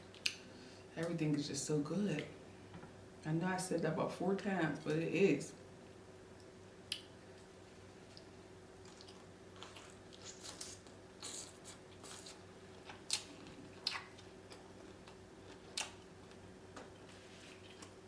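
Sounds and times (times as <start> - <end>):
person chewing with wet mouth clicks: 8.1 - 16.0.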